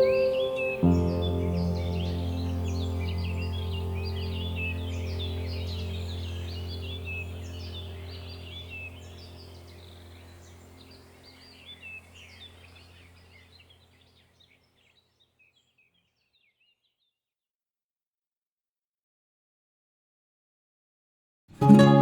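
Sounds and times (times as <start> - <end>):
small birds chirping: 0.0 - 17.2
low steady hum: 1.3 - 13.8.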